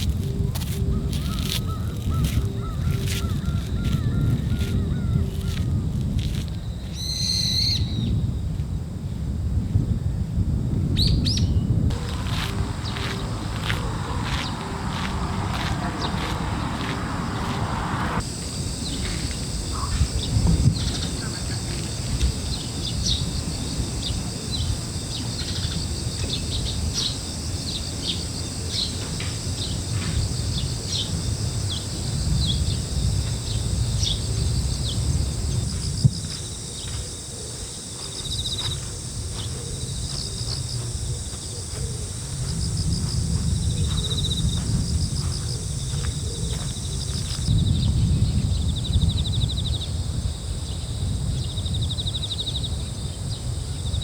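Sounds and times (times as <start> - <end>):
wind rumbling: 0.0 - 7.1, 7.7 - 54.0
insects trilling: 0.0 - 8.1, 11.9 - 54.0
sea surf rumbling: 11.9 - 19.7.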